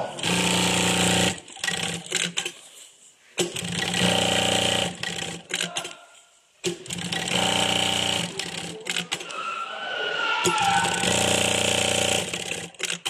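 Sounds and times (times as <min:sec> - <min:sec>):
industrial sewing machine stitching: 0:00.0 - 0:02.5, 0:03.4 - 0:05.8, 0:06.6 - 0:09.3, 0:10.6 - 0:13.0
sewing machine mechanism clicks: 0:00.2 - 0:02.6, 0:03.4 - 0:06.0, 0:06.6 - 0:09.3, 0:10.6 - 0:13.0.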